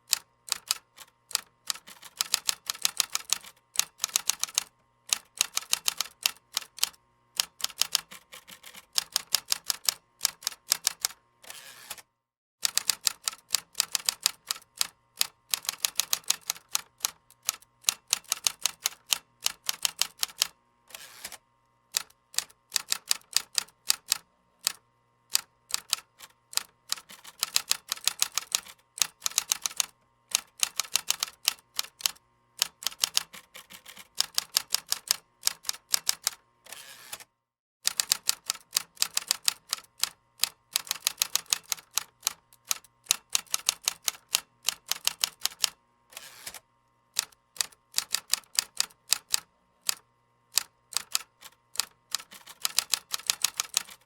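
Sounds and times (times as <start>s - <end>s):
keyboard typing clicks: 50.6s - 54.0s.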